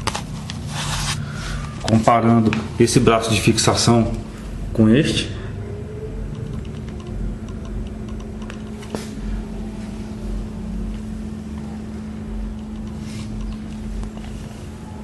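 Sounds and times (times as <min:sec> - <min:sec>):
low mechanical hum: 0:00.0 - 0:15.0
faint ticking: 0:06.1 - 0:14.4.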